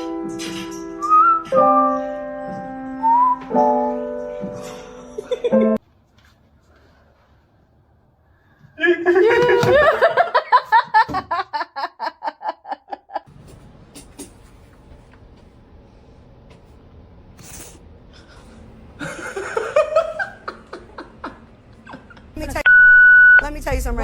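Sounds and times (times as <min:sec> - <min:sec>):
person laughing: 0:05.2 - 0:05.8, 0:08.8 - 0:13.3, 0:19.0 - 0:22.7.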